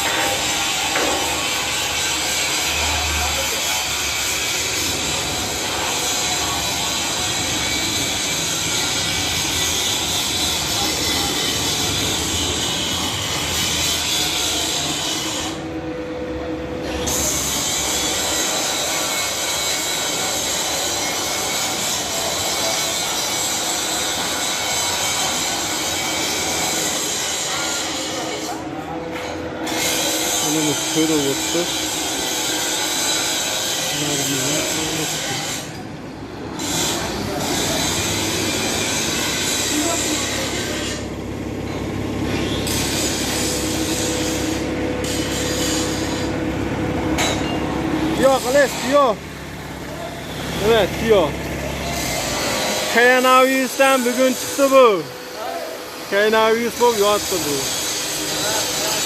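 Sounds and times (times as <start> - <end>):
sheet metal machine running: 0.0 - 59.0
high-pitched machine whine: 29.2 - 59.0.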